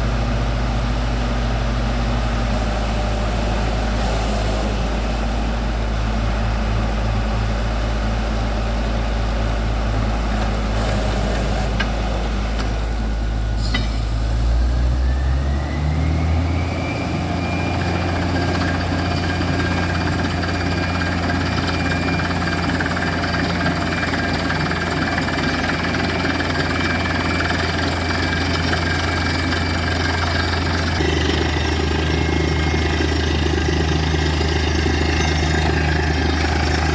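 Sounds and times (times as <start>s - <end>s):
drilling rig engine droning: 0.0s - 36.9s.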